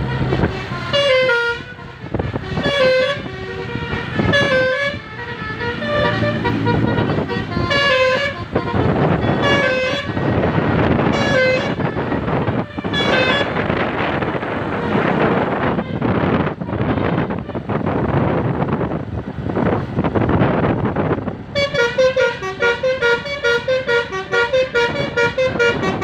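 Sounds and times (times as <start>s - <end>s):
road noise: 0.0s - 26.0s
musical horn toots: 0.1s - 13.8s, 21.5s - 26.0s.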